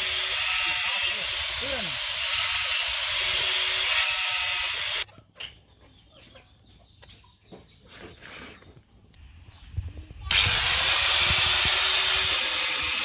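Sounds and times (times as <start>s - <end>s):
faint chicken clucking: 5.1s - 10.1s.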